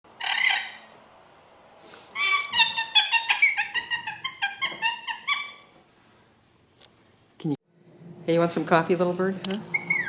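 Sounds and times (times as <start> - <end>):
small animal squeaky calls: 2.2 - 5.7, 9.7 - 10.0.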